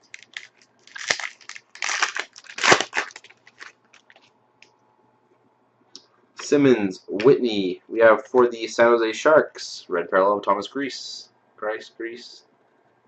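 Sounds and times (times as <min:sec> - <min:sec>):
foil wrapper crinkling: 0:00.0 - 0:04.3.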